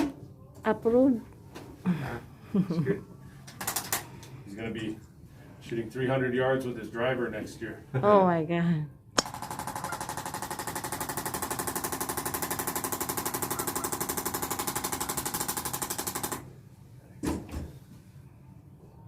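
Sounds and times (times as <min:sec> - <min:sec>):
electric percussion device pulsing: 0:09.2 - 0:16.4.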